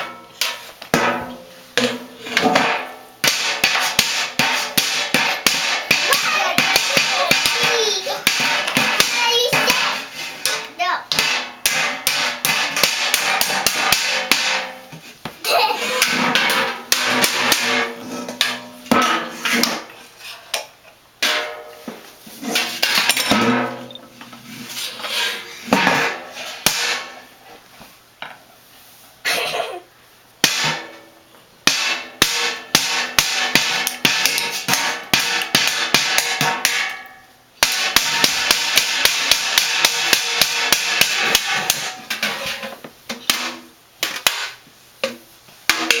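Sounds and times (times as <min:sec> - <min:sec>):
toy percussion strikes: 0:05.5 - 0:10.0.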